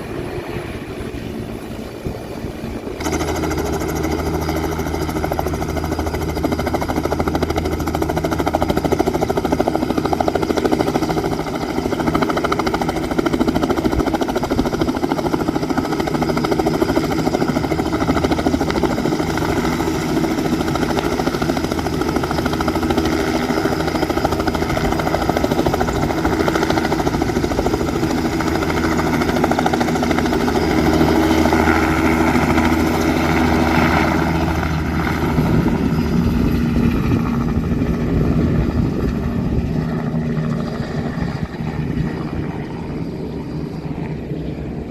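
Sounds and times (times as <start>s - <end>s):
helicopter turbine and rotor: 0.0s - 44.9s
propeller plane engine drone: 0.0s - 44.9s.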